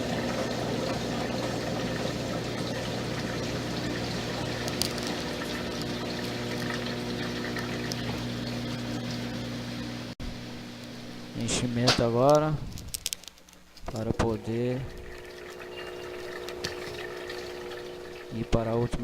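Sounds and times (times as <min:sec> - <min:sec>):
washing machine spinning: 0:00.0 - 0:10.2, 0:14.3 - 0:19.0
water running through drain pump: 0:00.0 - 0:10.2, 0:14.0 - 0:19.0.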